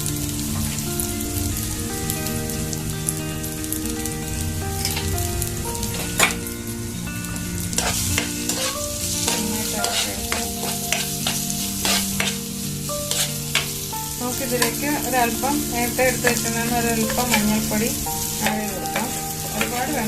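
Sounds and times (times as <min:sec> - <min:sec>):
vegetables sizzling in hot oil: 0:00.0 - 0:20.0
spatula knocking and scraping pan: 0:05.9 - 0:06.4, 0:07.8 - 0:12.4, 0:13.1 - 0:13.8, 0:18.4 - 0:20.0.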